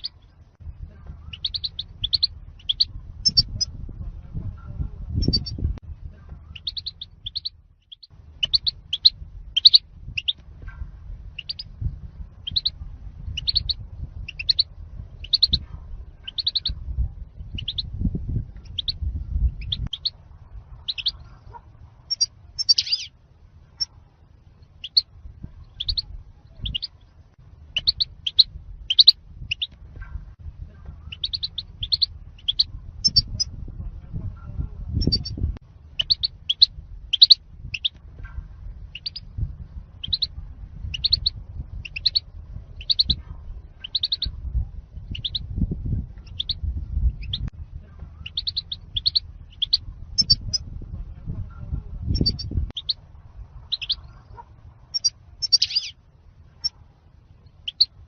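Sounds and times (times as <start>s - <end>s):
goldfinch high chirps: 0.0s - 0.2s, 1.3s - 3.6s, 6.5s - 10.4s, 12.4s - 12.8s, 13.4s - 15.6s, 16.2s - 16.8s, 22.1s - 23.1s, 25.7s - 27.0s, 27.7s - 29.8s, 31.1s - 33.4s, 36.0s - 37.9s, 40.0s - 40.3s, 40.9s - 42.2s, 42.8s - 43.2s, 43.8s - 44.3s, 45.1s - 45.4s, 46.2s - 46.6s, 48.2s - 50.6s, 52.2s - 53.0s, 53.7s - 54.2s, 54.9s - 56.0s, 57.6s - 57.9s
low background rumble: 0.0s - 58.0s.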